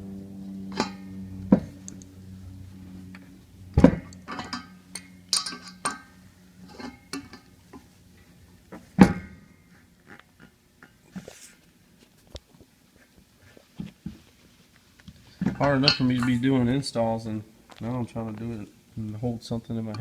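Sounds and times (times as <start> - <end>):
low steady hum: 0.0 - 20.0
metal clicks and knocks: 3.8 - 6.1.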